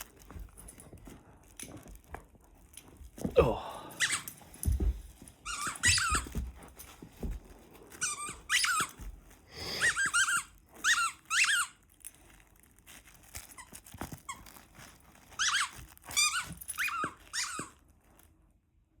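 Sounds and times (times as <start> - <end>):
soft thuds: 4.5 - 7.7
squeaky dog toy squeaking: 5.4 - 6.4, 8.0 - 9.1, 9.8 - 11.9, 15.3 - 17.8.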